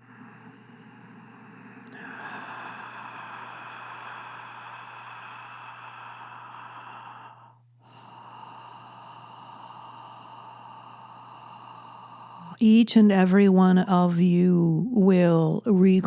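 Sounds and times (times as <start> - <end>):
breathy exhaling and inhaling: 0.0 - 12.6
faint electrical hum: 0.0 - 16.0.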